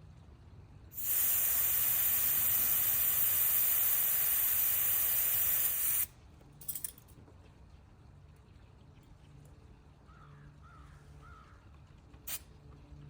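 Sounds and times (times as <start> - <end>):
air hissing from tire valve: 0.9 - 6.1.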